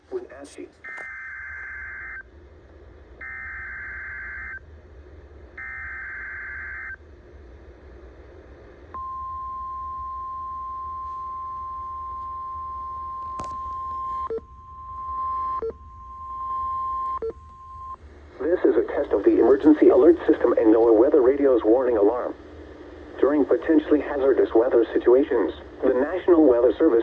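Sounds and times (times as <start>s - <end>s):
steady warning alarm tone: 0.8s - 2.3s, 3.2s - 4.6s, 5.6s - 7.0s, 9.0s - 22.2s.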